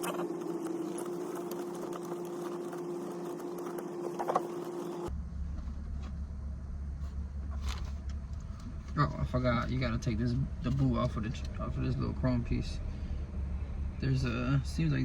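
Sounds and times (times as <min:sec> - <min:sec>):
steady mechanical hum: 0:00.0 - 0:15.0
low rumble: 0:05.1 - 0:15.0.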